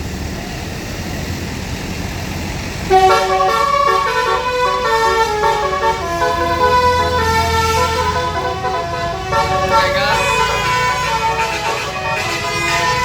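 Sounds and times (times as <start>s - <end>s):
low vehicle rumble: 0.0s - 13.0s
melodic vehicle horn tune: 2.9s - 13.0s.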